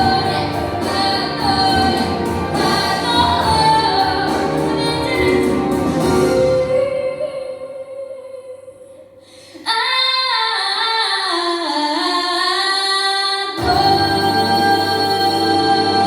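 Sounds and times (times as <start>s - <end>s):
musical accompaniment: 0.0s - 7.4s, 13.6s - 16.0s
woman singing: 0.0s - 16.0s.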